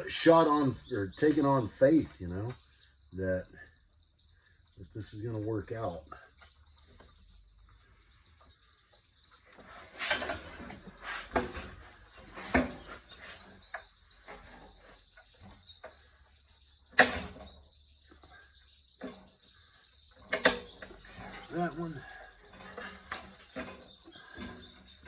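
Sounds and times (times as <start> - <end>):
metal tools clanking: 9.6 - 16.0, 18.2 - 25.0.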